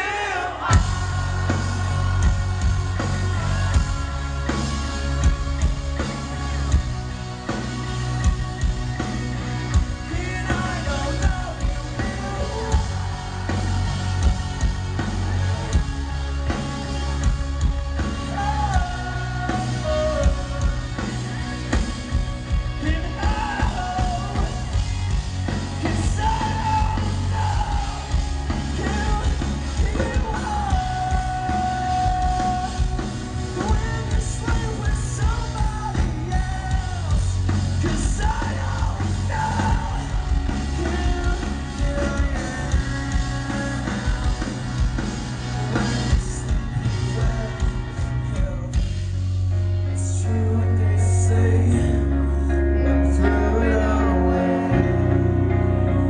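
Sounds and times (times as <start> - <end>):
sung and yelled vocals: 0.0 - 55.1
rock band playing live: 0.0 - 56.0.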